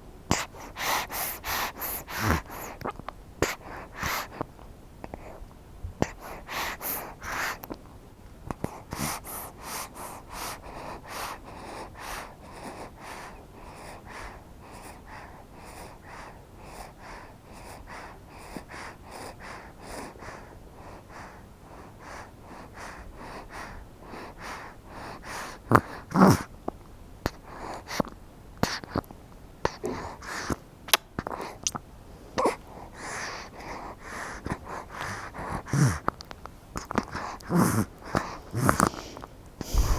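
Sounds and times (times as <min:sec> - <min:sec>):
baby sucking: 0:38.6 - 0:39.9.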